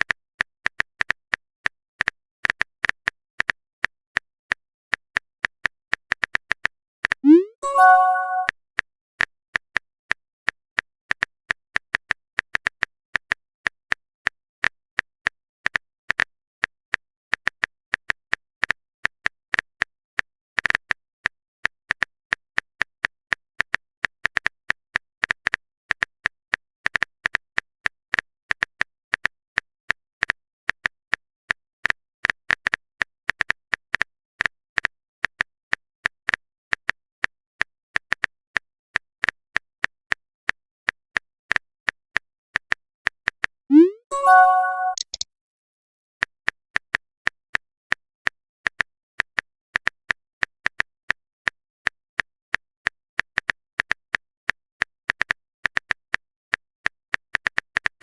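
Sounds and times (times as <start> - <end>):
phone keyboard clicks: 43.8 - 45.2.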